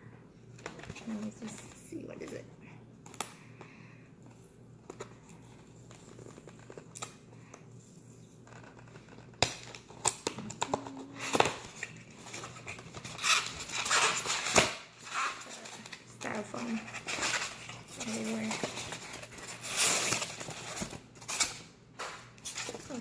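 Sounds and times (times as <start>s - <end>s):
styrofoam packing rustling: 8.4s - 23.0s.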